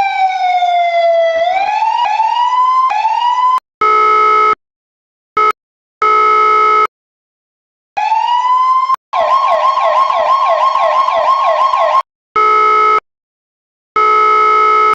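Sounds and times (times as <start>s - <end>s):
fast siren yelp: 0.0s - 4.3s, 8.0s - 13.0s
siren wail: 0.0s - 4.6s, 8.0s - 13.0s, 14.0s - 14.9s.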